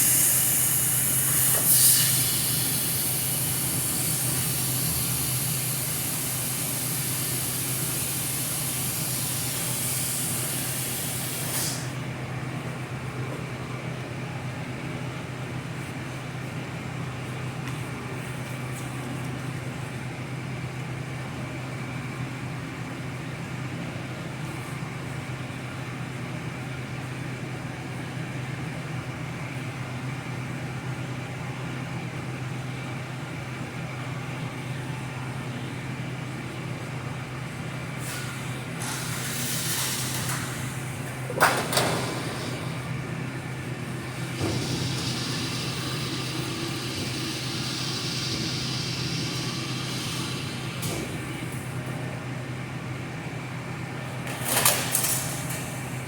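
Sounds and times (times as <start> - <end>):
hiss: 0.0 - 12.0, 38.0 - 40.8, 44.1 - 51.3
shop machinery humming: 0.0 - 56.0.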